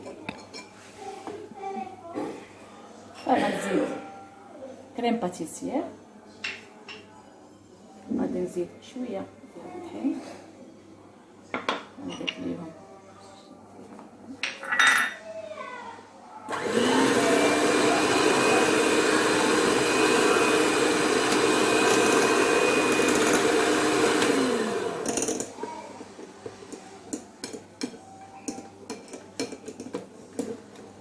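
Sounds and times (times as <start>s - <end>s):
electric hand mixer running: 16.5s - 25.6s.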